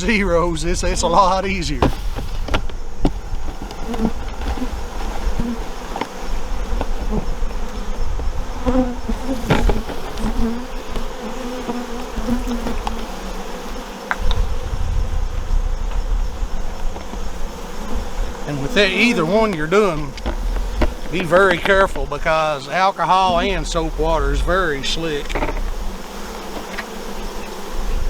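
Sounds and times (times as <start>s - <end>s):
honeybees buzzing: 0.0s - 28.0s
sharp knocks: 20.1s - 22.1s.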